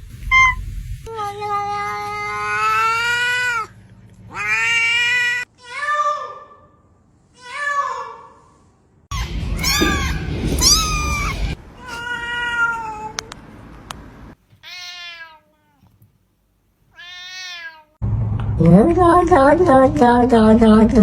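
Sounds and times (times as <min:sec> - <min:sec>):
cats meowing: 0:00.2 - 0:03.7, 0:04.3 - 0:06.0, 0:09.1 - 0:13.4, 0:14.6 - 0:15.9, 0:16.9 - 0:18.0.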